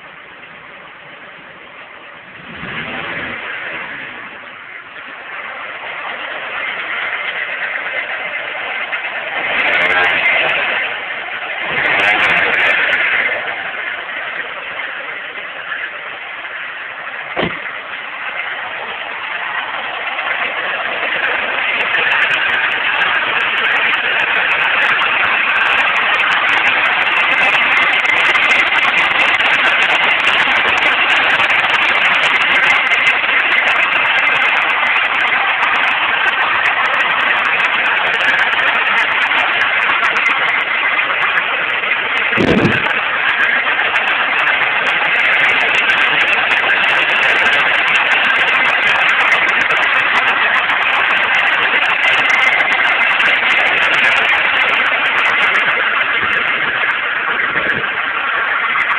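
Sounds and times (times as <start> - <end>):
car engine running: 0.0 - 58.9
short thump: 17.4 - 17.8.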